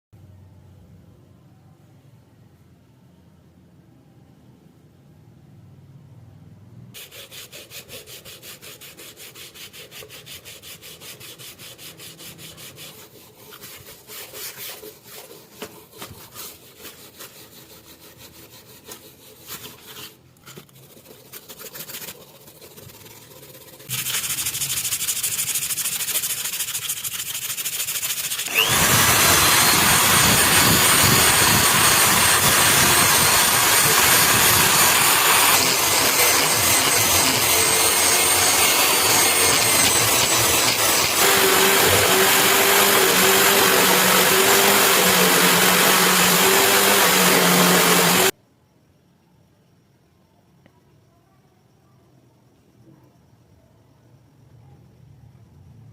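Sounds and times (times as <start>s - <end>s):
power tool grinding steel: 28.3s - 48.3s.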